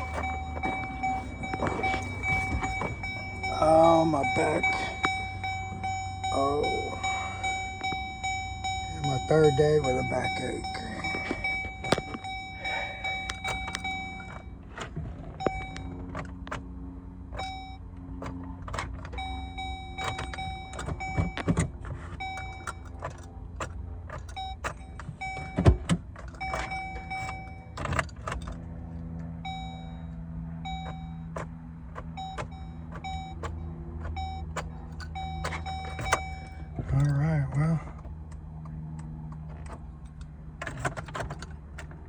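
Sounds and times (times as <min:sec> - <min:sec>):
steady low hum: 0:00.0 - 0:24.2
car warning chime dinging: 0:00.0 - 0:28.6, 0:29.2 - 0:39.2.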